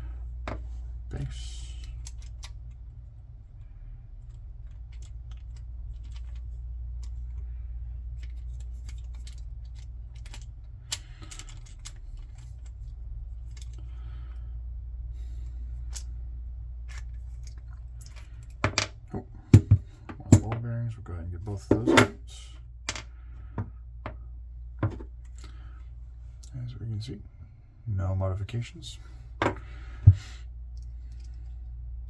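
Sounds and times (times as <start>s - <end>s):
steady low hum: 0.0s - 32.0s
small metal parts clicking: 1.6s - 2.9s, 4.2s - 7.5s, 8.1s - 13.9s, 30.8s - 31.6s.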